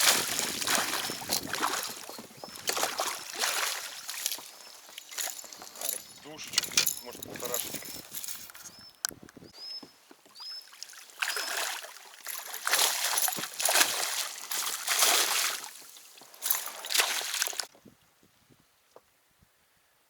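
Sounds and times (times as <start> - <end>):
water splashing: 0.0 - 7.9, 10.7 - 17.7.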